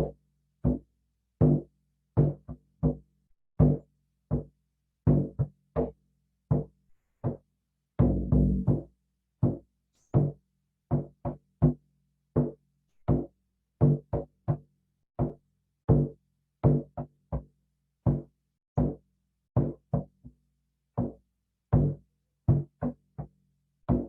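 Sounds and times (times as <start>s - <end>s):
hand drum beats: 8.0s - 9.6s.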